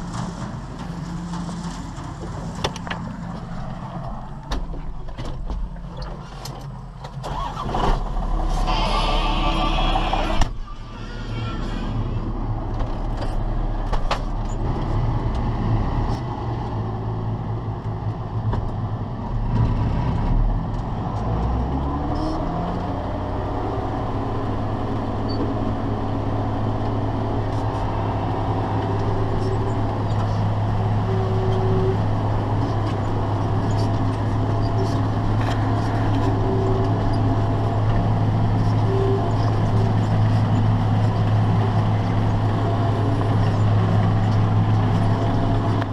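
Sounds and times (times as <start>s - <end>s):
tractor engine running: 0.0s - 45.9s.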